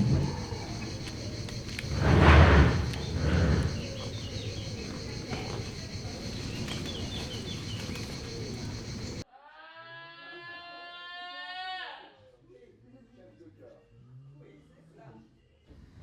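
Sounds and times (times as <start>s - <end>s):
faint bird chirps: 0.0s - 9.2s
loud rushing breathy noise: 0.0s - 9.2s
steady high hiss: 0.0s - 9.2s.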